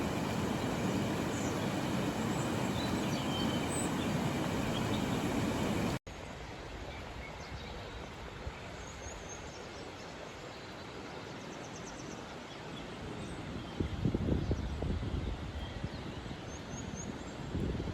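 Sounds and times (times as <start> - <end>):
wind buffeting microphone: 0.0 - 6.0, 13.6 - 17.9
flowing river water: 0.0 - 13.8.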